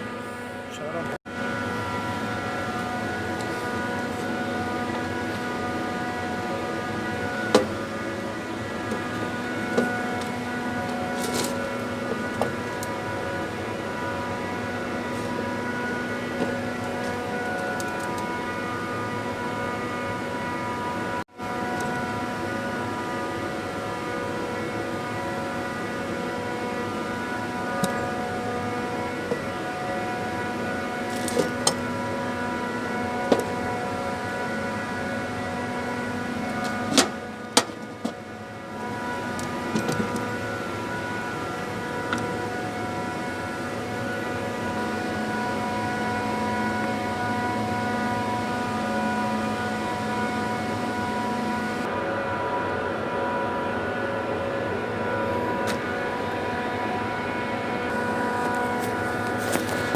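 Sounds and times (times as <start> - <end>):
screw compressor whining: 21.4 - 51.9.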